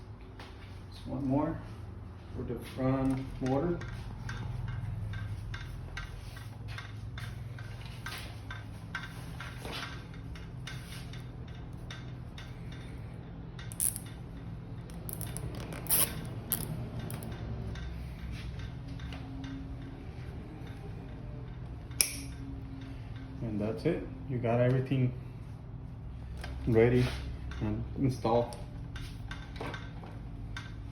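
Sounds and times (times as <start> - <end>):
steady low hum: 0.0 - 30.9
plastic and metal snaps: 22.0 - 22.3.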